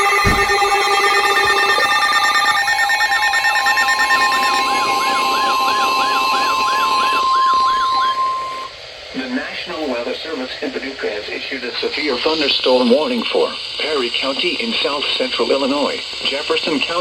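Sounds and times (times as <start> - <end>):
electronic alarm tones: 0.0 - 8.7
wailing sirens: 0.0 - 8.7
steady weather radio alarm tone: 0.0 - 10.8.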